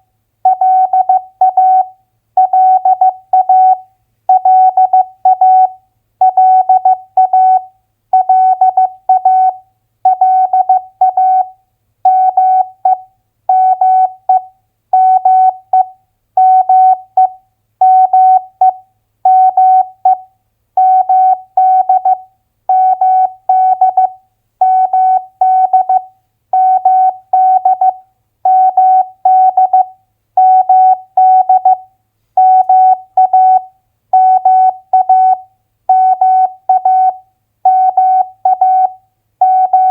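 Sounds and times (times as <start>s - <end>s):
morse code beeps: 34.2s - 39.9s.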